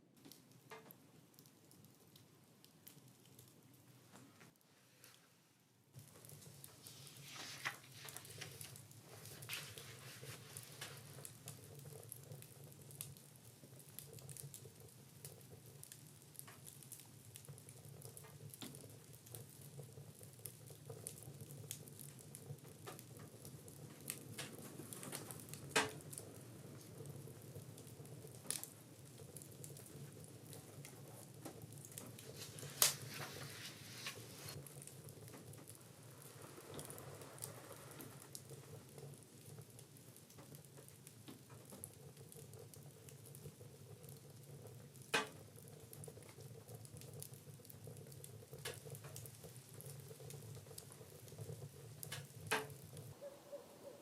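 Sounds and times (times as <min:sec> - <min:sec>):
wood stove crackle and sizzle: 0:00.0 - 0:54.0
small ticks and pops: 0:00.2 - 0:04.6, 0:10.6 - 0:33.1, 0:34.5 - 0:53.2.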